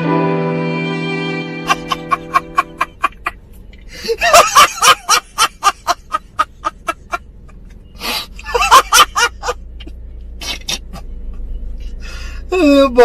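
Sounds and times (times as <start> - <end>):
held music chord: 0.0 - 3.0
person laughing: 1.6 - 7.2.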